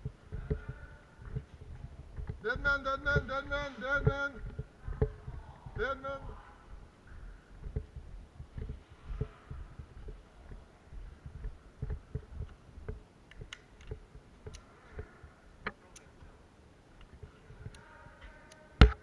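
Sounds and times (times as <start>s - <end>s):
footsteps soft low thuds: 0.0s - 16.4s
sharp clicks: 11.3s - 16.1s.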